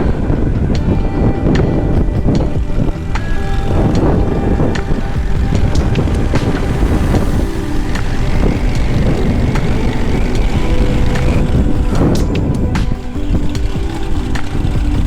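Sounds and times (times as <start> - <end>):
motorcycle engine running: 0.0 - 15.0
wind buffeting microphone: 0.0 - 15.0.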